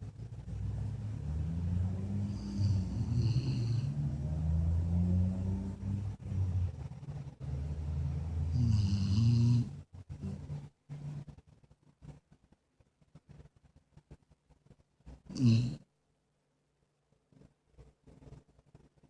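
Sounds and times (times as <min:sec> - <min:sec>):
dog snoring: 0:01.3 - 0:06.8, 0:07.6 - 0:10.5, 0:15.3 - 0:15.8.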